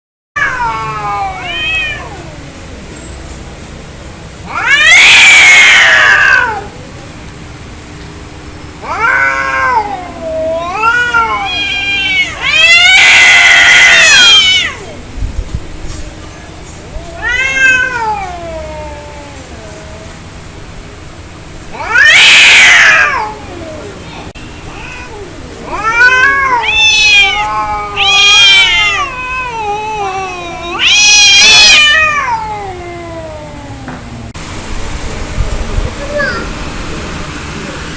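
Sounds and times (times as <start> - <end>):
cats yowling and screeching: 0.4 - 3.0, 4.4 - 6.8, 8.8 - 15.2, 15.9 - 20.6, 21.6 - 34.3.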